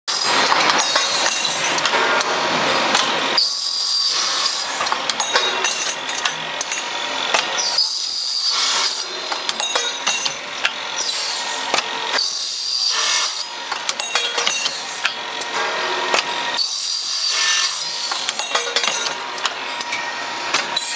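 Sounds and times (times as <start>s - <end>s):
saw cutting: 3.4s - 4.9s, 7.0s - 9.3s, 11.0s - 13.6s, 15.8s - 18.4s.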